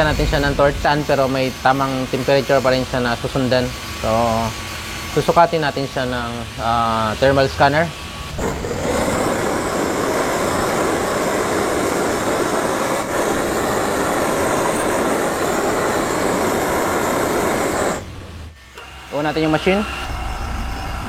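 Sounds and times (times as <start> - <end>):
gas torch flame rushing: 0.0 - 21.0.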